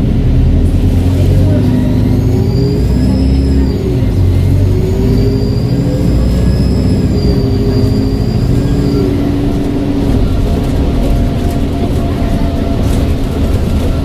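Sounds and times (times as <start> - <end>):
bus engine running: 0.0 - 14.0
high turbo whistle: 1.6 - 9.5.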